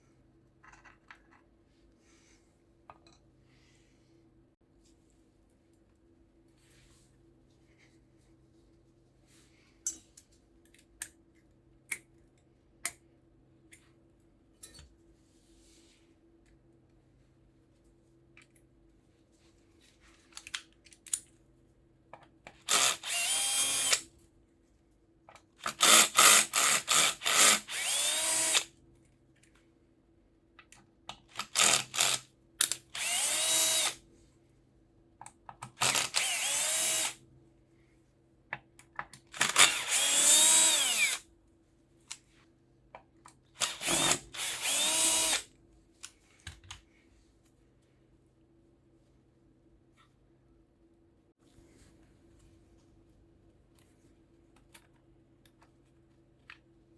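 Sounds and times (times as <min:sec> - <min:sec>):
power drill-driver spinning: 0:22.7 - 0:24.0, 0:25.7 - 0:28.6, 0:31.4 - 0:32.2, 0:33.0 - 0:34.0, 0:35.8 - 0:37.2, 0:39.3 - 0:41.2, 0:43.6 - 0:45.5.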